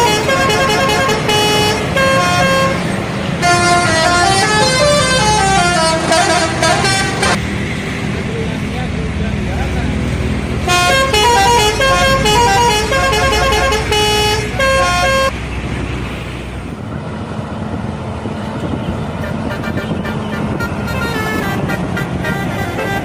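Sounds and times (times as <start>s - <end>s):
multi-note musical bus horn: 0.0s - 7.4s, 10.6s - 15.4s, 19.1s - 23.0s
engine and road noise: 0.0s - 23.0s.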